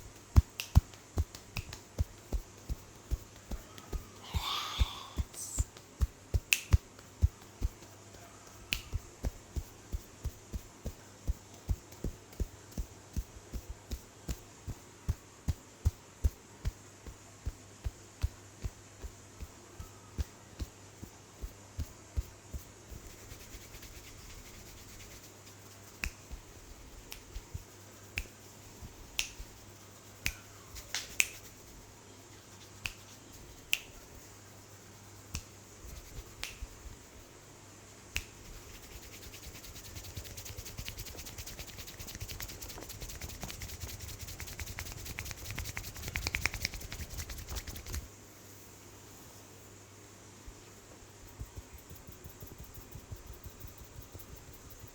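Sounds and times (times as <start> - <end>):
rapid tapping: 0.0 - 4.2, 38.5 - 48.0
sharp snaps: 0.0 - 31.8, 32.6 - 34.3, 35.0 - 37.2, 38.0 - 48.2
soft patting on skin: 0.0 - 37.4, 38.0 - 49.4, 50.4 - 54.9.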